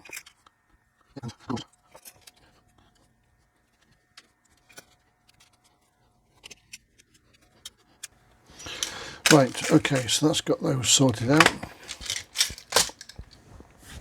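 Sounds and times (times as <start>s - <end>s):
metal screws and tools clicking: 8.6s - 10.2s, 11.1s - 13.4s.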